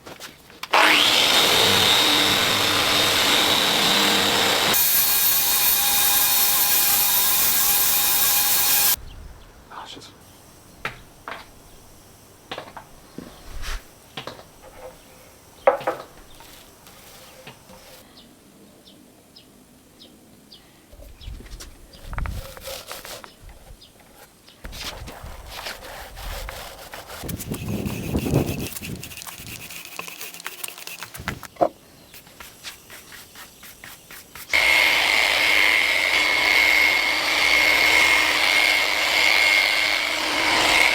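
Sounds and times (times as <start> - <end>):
electric sander whining: 0.7 - 9.0, 34.6 - 40.9
light rubbing: 24.2 - 34.5.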